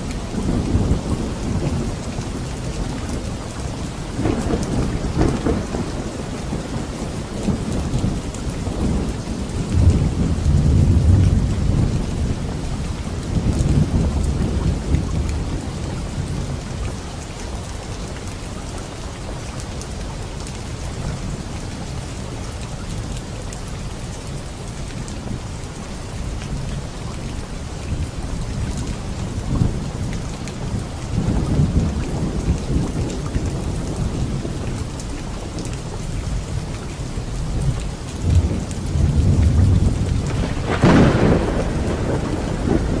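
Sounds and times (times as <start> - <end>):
heavy rain: 0.0 - 43.0
thunder rumbling: 0.2 - 17.0, 26.6 - 35.6, 37.2 - 43.0.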